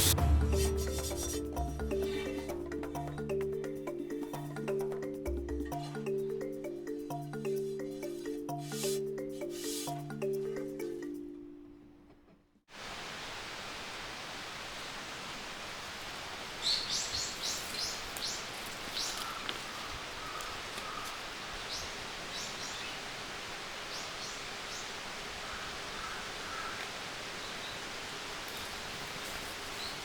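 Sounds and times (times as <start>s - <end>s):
hiss of outdoor ambience: 0.0s - 11.3s, 12.7s - 30.0s
background music: 0.0s - 12.0s
birds calling: 16.6s - 23.2s, 23.8s - 27.9s.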